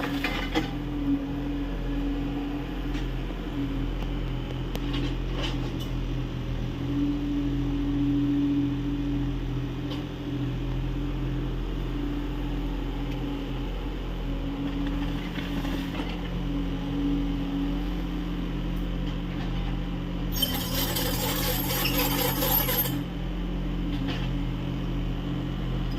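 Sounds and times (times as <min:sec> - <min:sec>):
excavator diesel engine running: 0:11.2 - 0:25.9
loud harsh rasping noise: 0:20.3 - 0:23.0.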